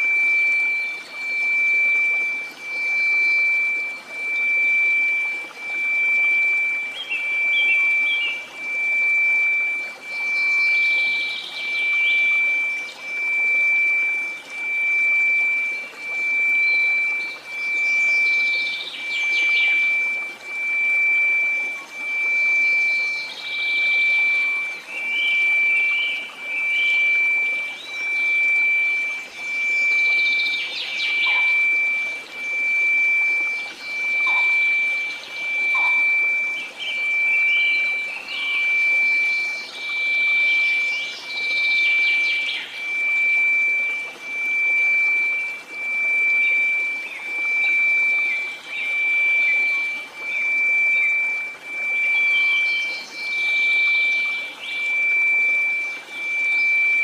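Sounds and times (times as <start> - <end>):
bird-like chirps: 0.0 - 44.0
sine tone: 0.0 - 57.0.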